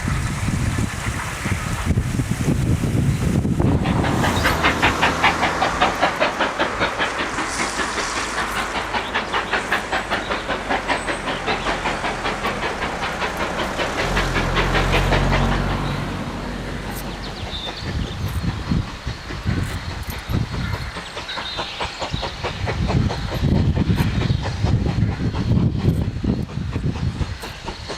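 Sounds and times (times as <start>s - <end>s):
steam hiss: 0.0s - 27.9s
steam locomotive exhaust beats: 0.0s - 27.9s.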